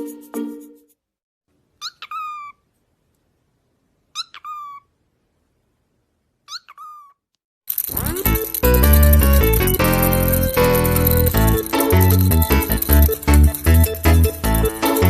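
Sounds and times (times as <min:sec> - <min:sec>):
parrot calling: 0:01.8 - 0:02.7, 0:04.1 - 0:05.0, 0:06.5 - 0:07.2.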